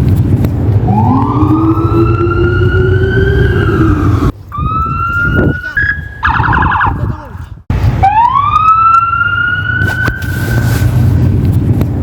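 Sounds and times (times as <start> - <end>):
low engine rumble: 0.0 - 4.4
emergency vehicle sirens: 0.7 - 7.0, 7.8 - 10.8.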